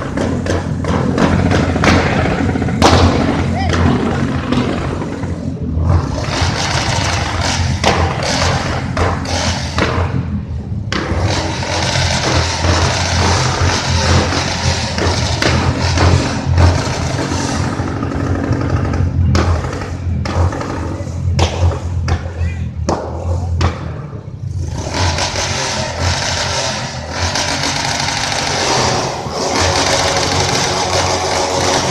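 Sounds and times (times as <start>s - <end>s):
motorcycle engine thumping: 0.0s - 5.0s, 21.4s - 24.3s
exhaust pops and bangs: 0.0s - 5.3s, 6.2s - 10.3s, 10.9s - 31.9s.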